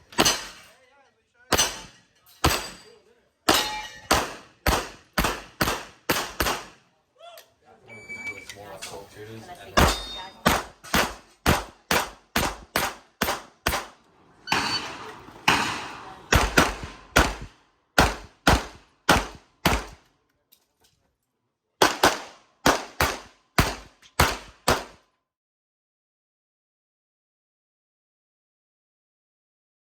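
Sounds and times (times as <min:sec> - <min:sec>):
handgun shots: 0:03.5 - 0:06.8, 0:09.8 - 0:14.9, 0:15.5 - 0:20.0, 0:21.8 - 0:25.0.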